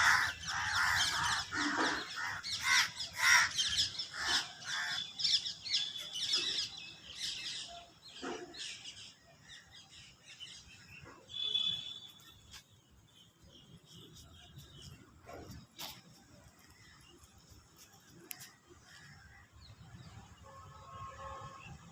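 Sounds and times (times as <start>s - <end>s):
crows cawing: 0.0s - 5.0s
birds chirping: 0.0s - 21.9s.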